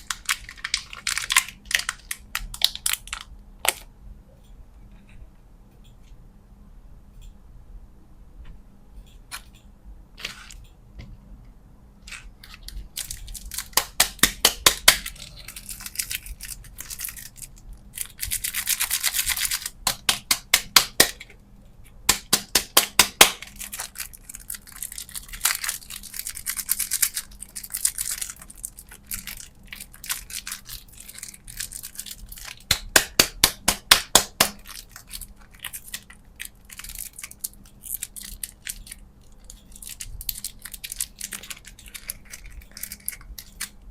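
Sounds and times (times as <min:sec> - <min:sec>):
packaging tearing: 0:00.0 - 0:03.8, 0:12.1 - 0:19.8, 0:23.2 - 0:43.8
candy packaging crinkling: 0:00.0 - 0:03.9, 0:12.0 - 0:43.9.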